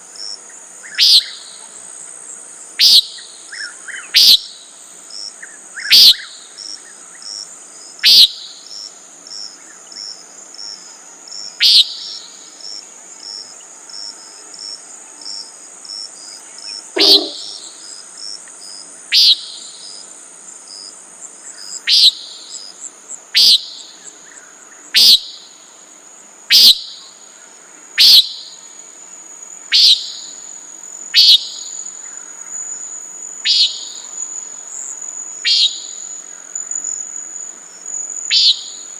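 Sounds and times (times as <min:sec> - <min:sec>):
crickets trilling: 0:00.0 - 0:38.9
nighthawk nasal peent call: 0:08.0 - 0:08.3, 0:17.0 - 0:17.7, 0:26.5 - 0:26.9, 0:28.0 - 0:28.3, 0:33.5 - 0:34.0, 0:35.4 - 0:36.0, 0:38.3 - 0:38.8.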